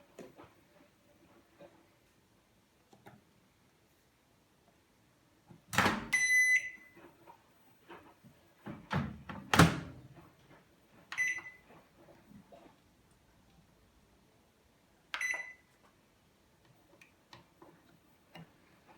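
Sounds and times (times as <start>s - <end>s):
microwave door clunk: 5.8s - 6.2s, 8.9s - 10.0s
door thump: 8.7s - 10.0s.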